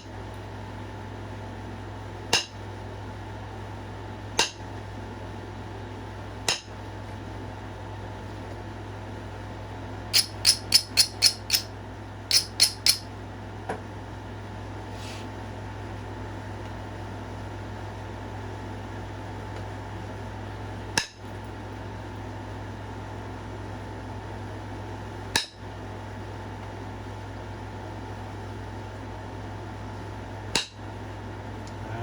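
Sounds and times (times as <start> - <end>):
steady low hum: 0.0 - 32.0
stone knapping clicks: 10.2 - 11.7, 12.3 - 13.0.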